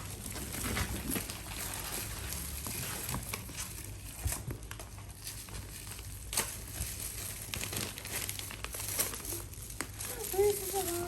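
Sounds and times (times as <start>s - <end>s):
gift wrapping crinkling and rustling: 0.0s - 11.0s.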